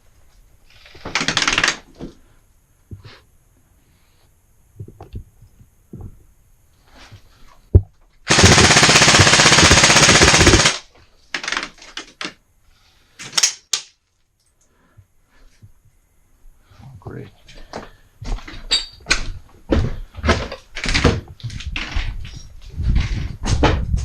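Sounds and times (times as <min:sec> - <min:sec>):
airsoft gun full-auto burst: 0:00.8 - 0:01.8, 0:08.3 - 0:11.8.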